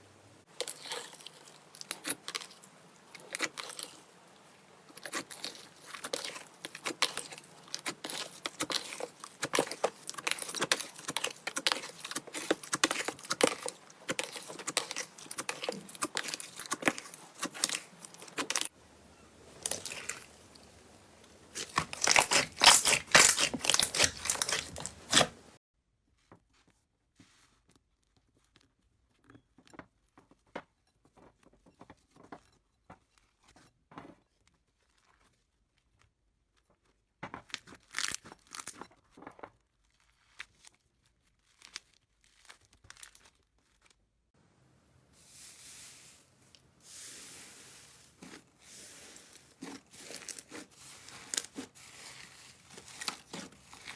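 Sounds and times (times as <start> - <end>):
slime crackling and popping: 0.6 - 18.8, 19.4 - 25.6, 49.0 - 53.9
soft hiss: 45.1 - 49.4.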